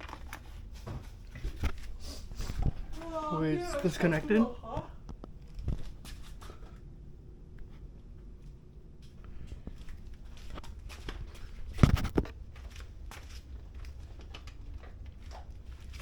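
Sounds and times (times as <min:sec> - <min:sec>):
faint rustling and clicks: 0:07.5 - 0:16.0.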